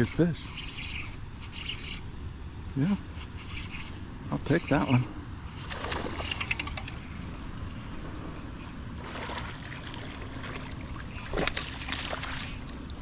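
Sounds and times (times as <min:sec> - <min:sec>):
water sloshing and splashing: 0:09.0 - 0:13.0.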